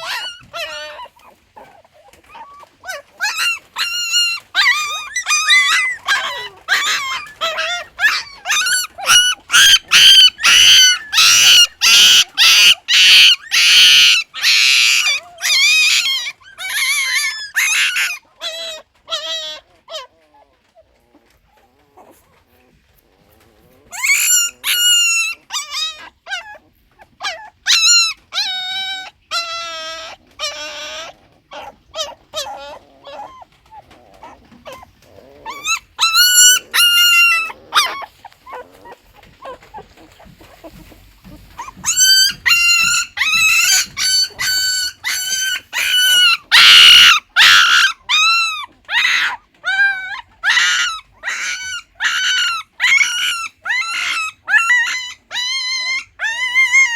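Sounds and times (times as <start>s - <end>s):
puppies whining: 0.0s - 56.9s.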